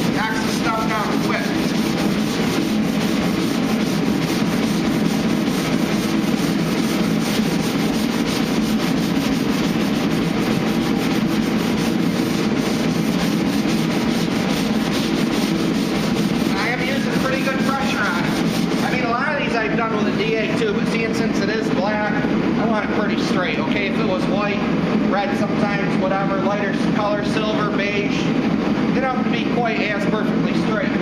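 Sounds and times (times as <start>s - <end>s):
sanding block scraping metal: 0.0s - 19.2s.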